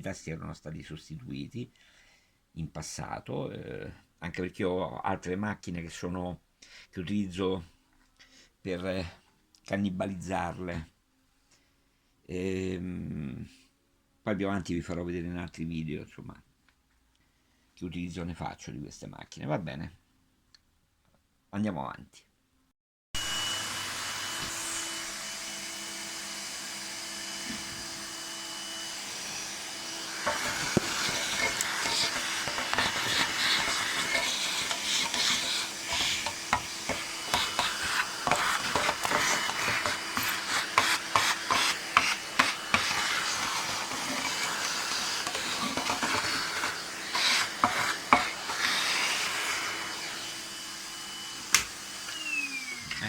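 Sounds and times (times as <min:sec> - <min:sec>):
vacuum cleaner motor whine: 0:23.2 - 0:53.0.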